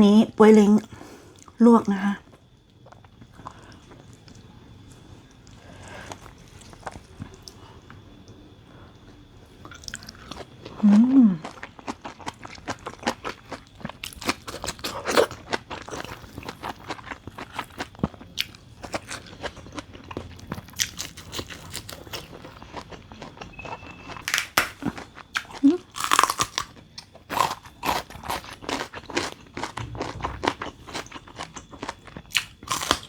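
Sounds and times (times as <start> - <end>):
chewing and crunching vegetables: 2.2 - 33.0
person humming: 10.8 - 11.4.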